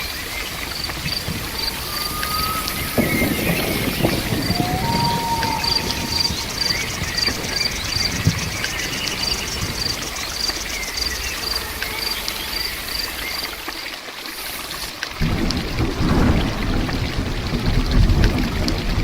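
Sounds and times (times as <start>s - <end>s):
cricket chirping: 0.0s - 15.0s
steady rain: 0.0s - 19.0s.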